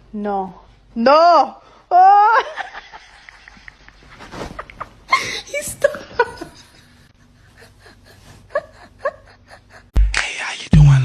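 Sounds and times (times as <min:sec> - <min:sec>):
person laughing breathily: 0:05.0 - 0:05.6, 0:07.2 - 0:10.0.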